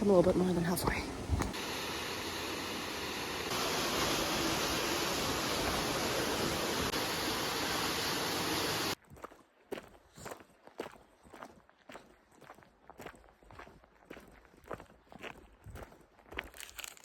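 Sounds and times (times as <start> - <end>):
waterfall roar: 1.6 - 9.0.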